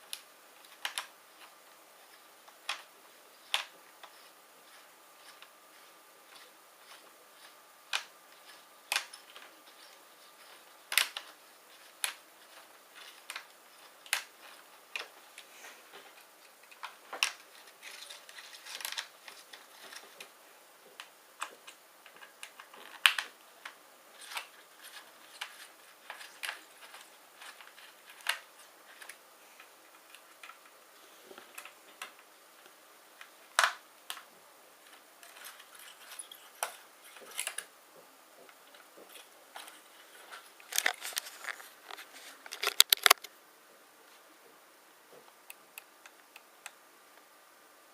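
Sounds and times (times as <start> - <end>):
laptop parts and tools clicking: 0.1 - 1.5, 2.5 - 15.1, 38.5 - 43.3.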